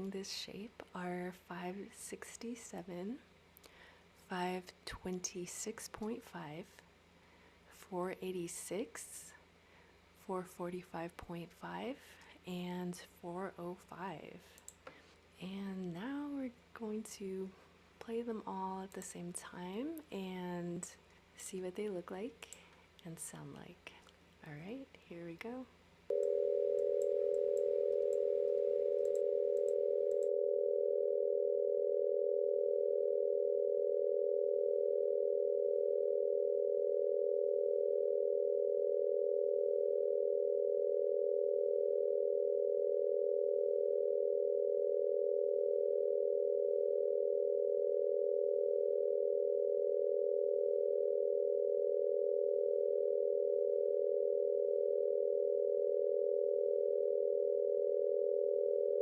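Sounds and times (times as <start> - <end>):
steady sine tone chord: 26.1 - 59.0.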